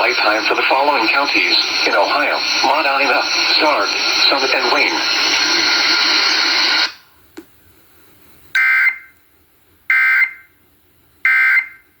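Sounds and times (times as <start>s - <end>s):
radio broadcast audio: 0.0s - 7.0s.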